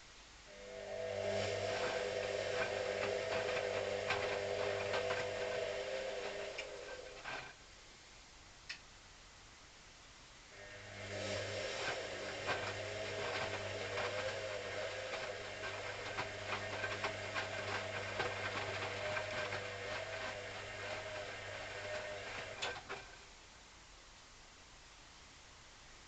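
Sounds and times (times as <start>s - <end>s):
washing machine motor hum: 0.5s - 7.6s, 10.5s - 23.5s.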